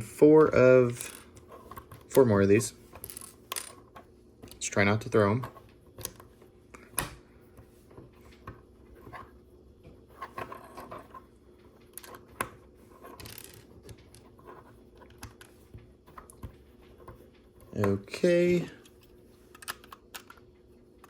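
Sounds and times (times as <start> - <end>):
plastic bricks clicking and clattering: 13.1 - 14.2.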